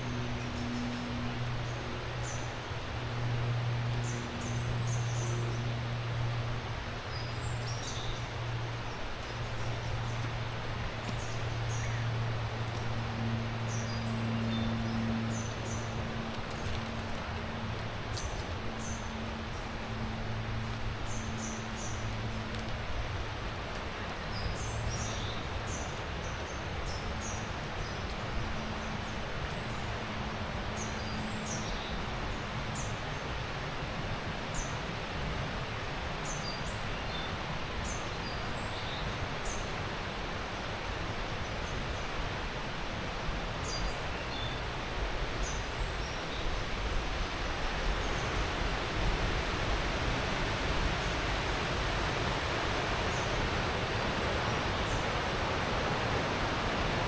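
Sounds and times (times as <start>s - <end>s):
river water rushing: 0.0s - 57.0s.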